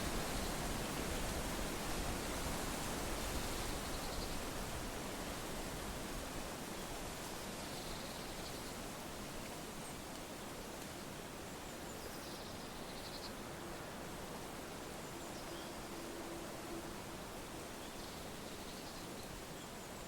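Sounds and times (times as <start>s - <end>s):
rustling leaves: 0.0s - 20.0s
wind: 0.0s - 20.0s.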